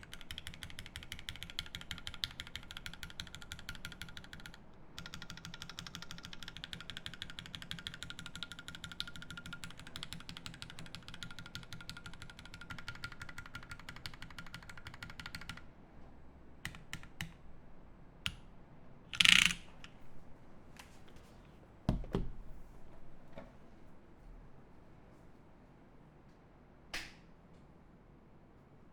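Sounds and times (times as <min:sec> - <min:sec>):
fast typing on mechanical keyboard: 0:00.0 - 0:15.7, 0:19.2 - 0:19.6
scattered clicks: 0:00.0 - 0:15.7.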